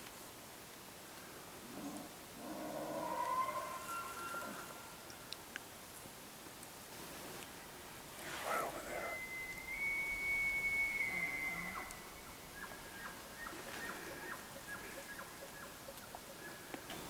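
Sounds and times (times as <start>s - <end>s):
elk bugling: 2.7s - 5.0s, 8.2s - 17.0s.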